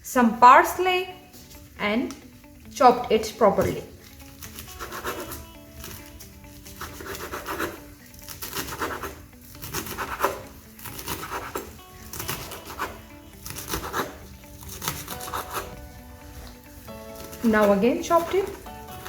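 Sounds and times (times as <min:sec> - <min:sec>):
background music: 0:00.0 - 0:19.0
knife chopping herbs on a board: 0:04.0 - 0:19.0.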